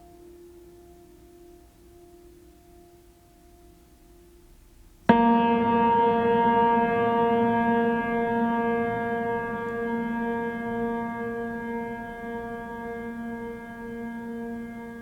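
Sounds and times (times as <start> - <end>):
deep bell-like note ringing: 5.1 - 15.0.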